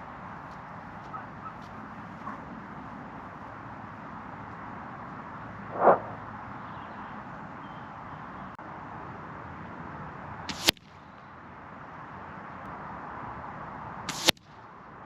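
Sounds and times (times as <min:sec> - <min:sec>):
wind noise on microphone: 0:05.6 - 0:06.4
loud muffled burst: 0:05.7 - 0:06.2.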